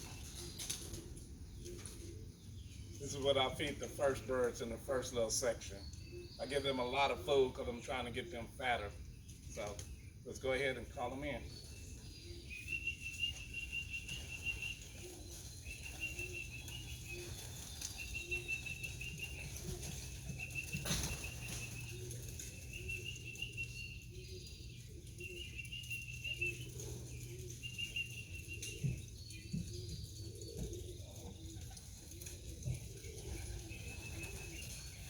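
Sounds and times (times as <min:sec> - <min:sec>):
pigeon wings flapping: 0:31.5 - 0:35.0.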